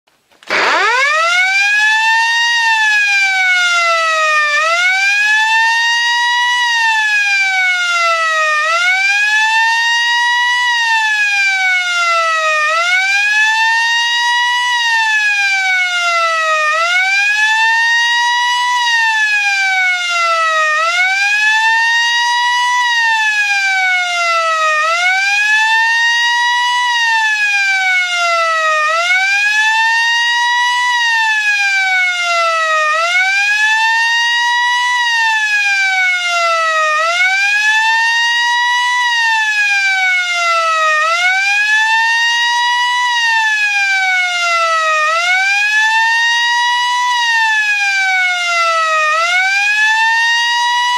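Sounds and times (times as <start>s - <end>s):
siren wailing: 0.4s - 50.9s.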